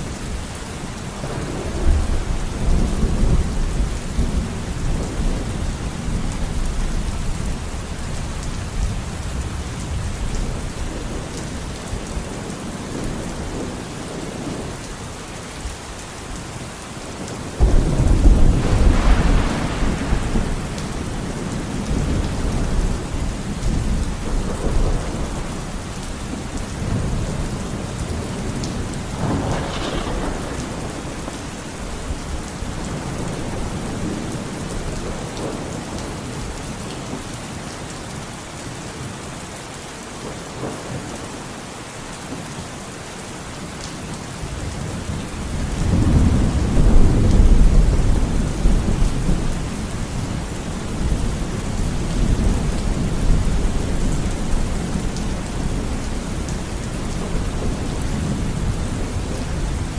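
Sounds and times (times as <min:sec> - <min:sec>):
steady rain: 0:00.0 - 0:59.9
rolling thunder: 0:17.5 - 0:36.2, 0:45.4 - 0:59.9.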